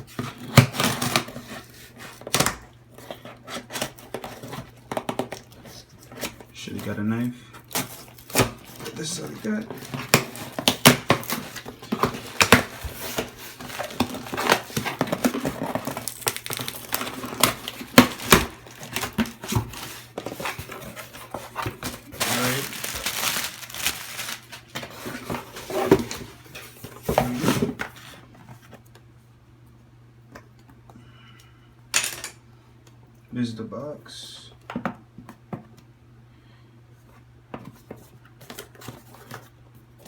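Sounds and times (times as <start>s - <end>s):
packaging rustling and crinkling: 0.0s - 28.5s
package tearing: 7.7s - 26.0s.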